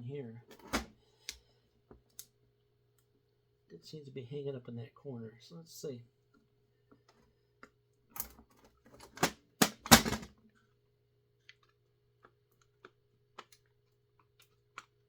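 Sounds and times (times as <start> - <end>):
plastic parts knocking: 9.0 - 10.3.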